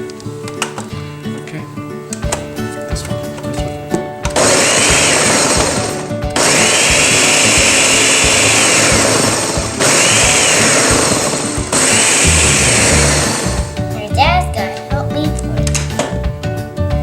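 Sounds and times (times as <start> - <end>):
blender motor whining: 4.4 - 13.8.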